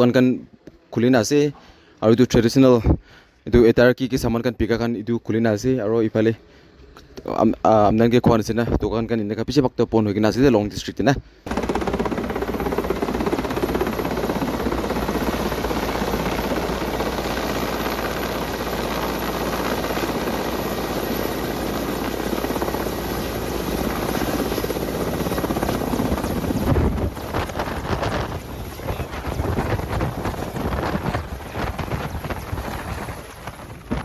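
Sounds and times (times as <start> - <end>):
helicopter rotor beating: 11.5 - 34.0
wind buffeting microphone: 11.8 - 34.0.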